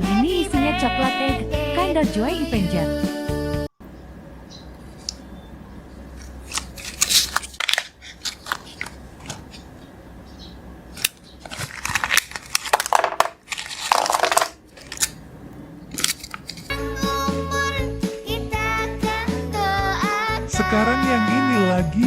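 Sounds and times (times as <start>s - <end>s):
plastic wrapper crinkling and tearing: 6.4s - 9.6s, 11.0s - 15.2s, 16.0s - 16.7s.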